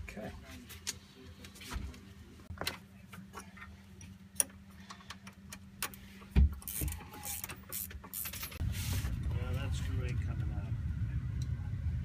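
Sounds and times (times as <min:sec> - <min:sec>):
steady low hum: 0:00.0 - 0:12.0
hand tools and metal parts clicking: 0:06.6 - 0:08.6.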